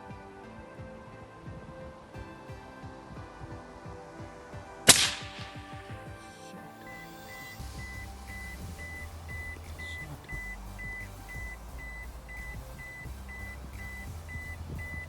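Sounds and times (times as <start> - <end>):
high electronic beep: 6.7 - 15.0
low bass drone: 6.8 - 15.0.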